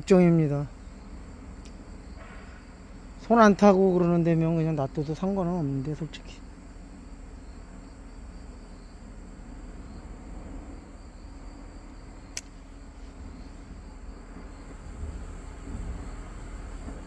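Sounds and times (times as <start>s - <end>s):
sharp click: 12.3s - 12.6s.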